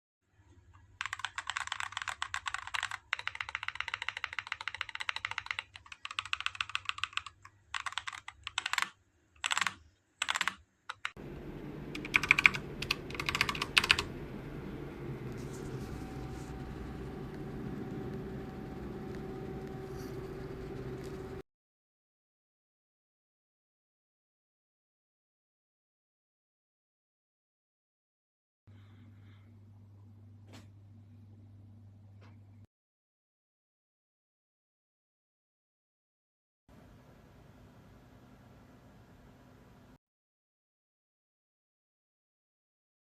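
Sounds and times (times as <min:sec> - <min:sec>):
typing on mechanical keyboard: 0:01.0 - 0:11.2, 0:11.9 - 0:14.1
steady hum: 0:11.2 - 0:21.4.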